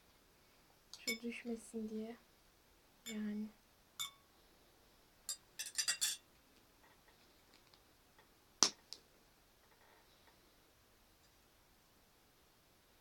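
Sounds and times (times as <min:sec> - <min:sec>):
spoon clinking against container: 0:04.0 - 0:04.2, 0:05.3 - 0:06.2.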